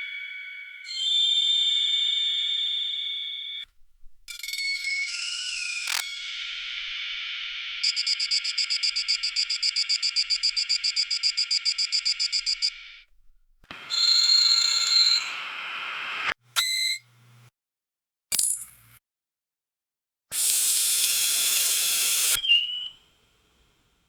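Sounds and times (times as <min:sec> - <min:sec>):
noisy synth shot with bright tone: 0:00.0 - 0:03.6, 0:04.3 - 0:13.1
electronic hum with high pulsing: 0:04.6 - 0:16.3.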